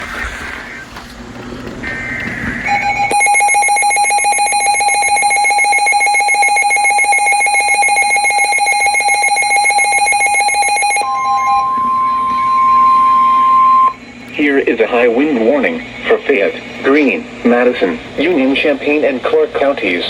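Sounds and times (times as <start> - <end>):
harsh buzzing alarm tone: 2.7 - 14.0
higher steady tone: 3.1 - 14.0.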